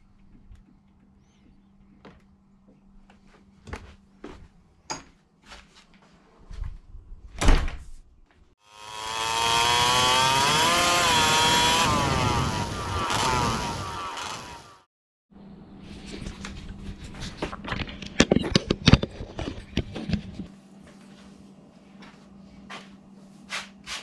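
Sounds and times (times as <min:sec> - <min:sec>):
two-stroke engine revving: 0:08.7 - 0:14.9.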